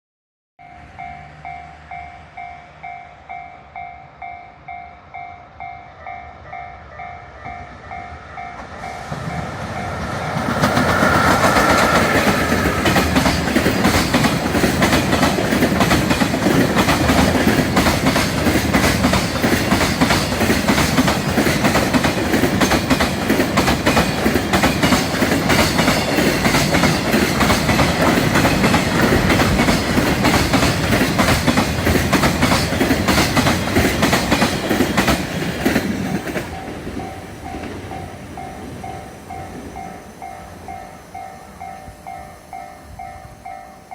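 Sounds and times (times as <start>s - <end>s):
freight train passing: 0.6s - 43.9s
train wheels clickety-clack: 7.6s - 40.0s.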